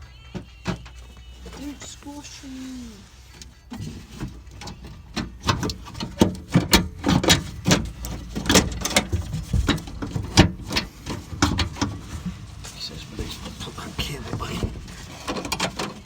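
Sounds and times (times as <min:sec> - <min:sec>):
door lock parts clicking and rattling: 0:04.6 - 0:12.0.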